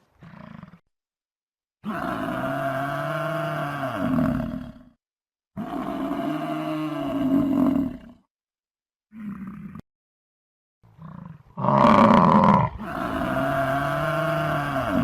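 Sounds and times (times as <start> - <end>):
bison bellowing: 11.6 - 15.0.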